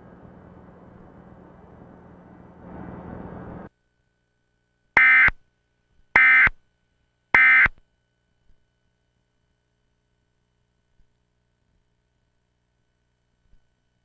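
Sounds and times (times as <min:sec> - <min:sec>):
buzzy digital data bursts: 0:05.0 - 0:05.4, 0:06.2 - 0:06.6, 0:07.4 - 0:07.8.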